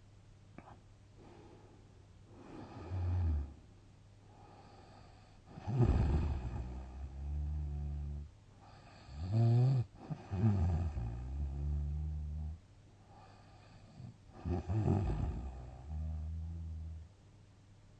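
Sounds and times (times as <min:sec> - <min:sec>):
rough noisy breath: 0:01.2 - 0:03.7, 0:04.3 - 0:06.9
person snoring: 0:02.4 - 0:03.6, 0:04.4 - 0:12.6, 0:13.2 - 0:17.1.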